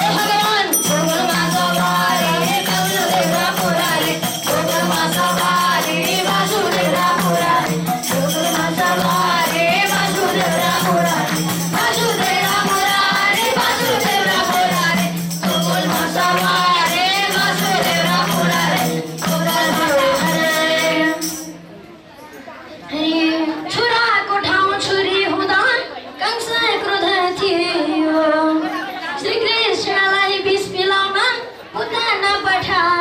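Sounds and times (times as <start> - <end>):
jingling hand percussion: 0.0 - 22.5.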